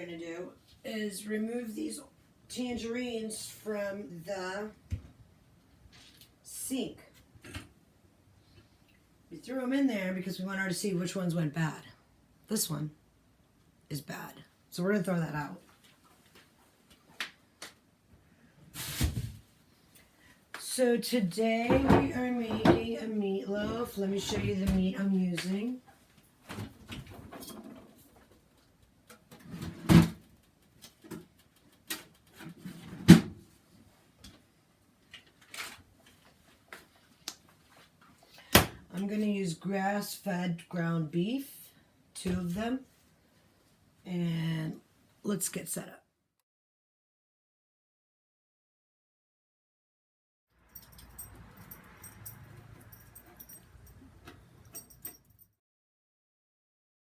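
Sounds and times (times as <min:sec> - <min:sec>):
light clicks and clinks: 0:50.7 - 0:55.5.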